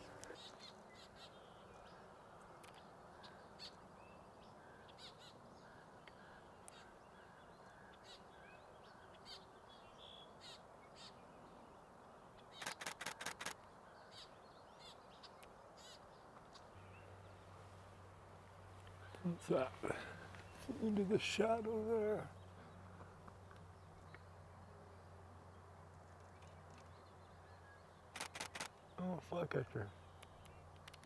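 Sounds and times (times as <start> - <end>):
small birds chirping: 0.0 - 31.0
camera shutter burst: 12.6 - 13.6, 28.2 - 28.8.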